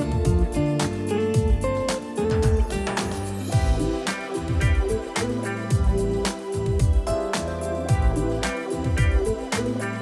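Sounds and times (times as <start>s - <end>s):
deep kick drum beat: 0.1s - 0.7s, 1.4s - 2.8s, 3.5s - 5.1s, 5.7s - 7.2s, 7.9s - 9.4s.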